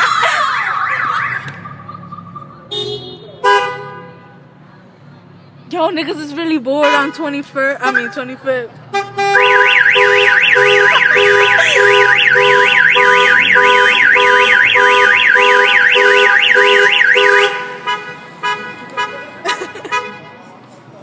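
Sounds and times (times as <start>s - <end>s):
electronic siren wailing: 0.0s - 1.9s, 9.4s - 17.6s.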